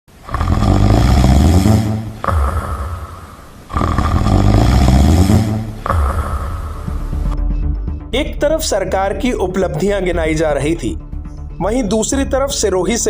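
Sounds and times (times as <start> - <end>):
man snoring heavily: 0.1 - 7.3.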